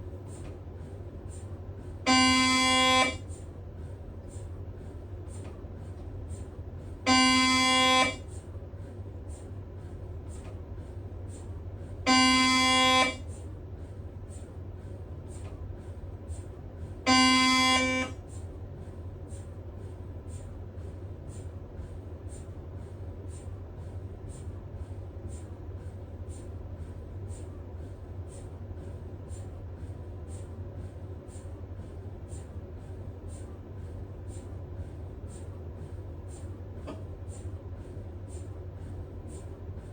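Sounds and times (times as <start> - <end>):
steady low hum: 0.0 - 39.9
mri scanner buzzing tones: 2.1 - 3.3, 7.1 - 8.4, 12.1 - 13.4, 17.1 - 18.2.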